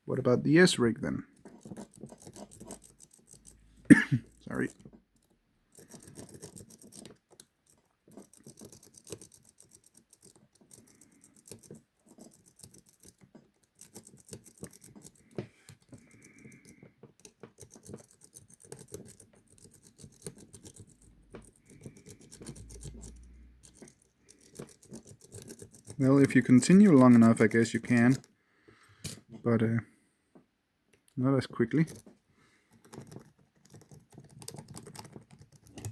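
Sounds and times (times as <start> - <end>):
lock pick scratching and clicking: 1.3 - 3.7, 4.4 - 28.4, 31.8 - 32.1, 32.7 - 35.9.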